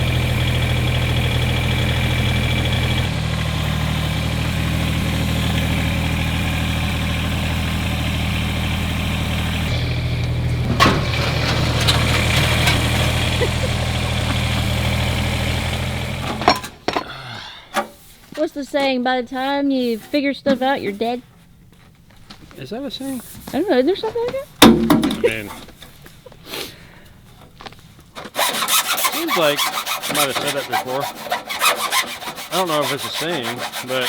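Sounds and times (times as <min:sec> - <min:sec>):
engine running: 0:00.0 - 0:17.1, 0:20.3 - 0:34.0
sharp knocks: 0:24.6 - 0:25.6.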